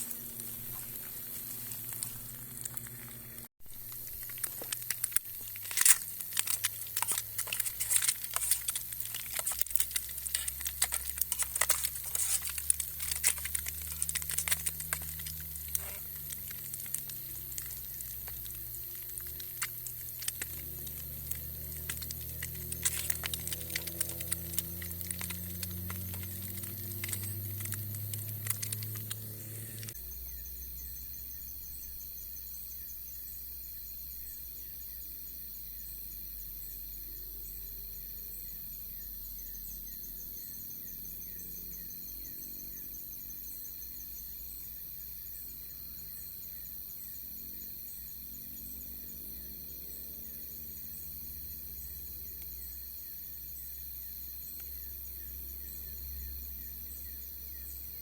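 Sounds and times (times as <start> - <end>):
insects chirping: 0.0 - 58.0
rapid tapping and clicking: 3.8 - 30.0.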